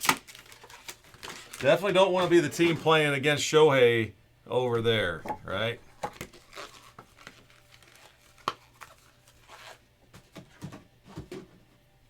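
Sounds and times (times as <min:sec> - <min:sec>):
packaging crinkling and tearing: 0:00.0 - 0:02.7, 0:06.0 - 0:10.4.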